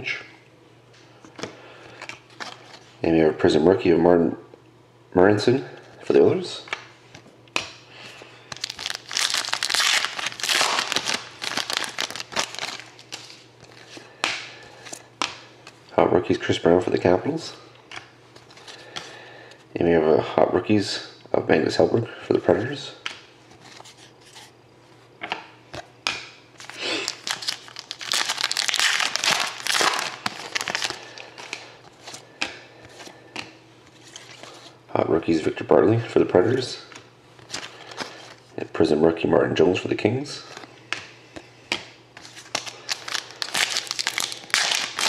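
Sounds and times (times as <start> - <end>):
foil wrapper crinkling: 8.5 - 14.1, 26.6 - 32.2, 42.2 - 45.0.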